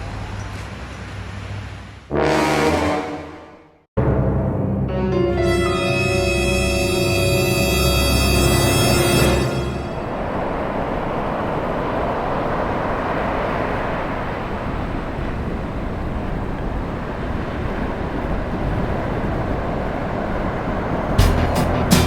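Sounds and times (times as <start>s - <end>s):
ocean surf breaking: 8.7s - 21.2s
music with a beat: 21.2s - 22.0s.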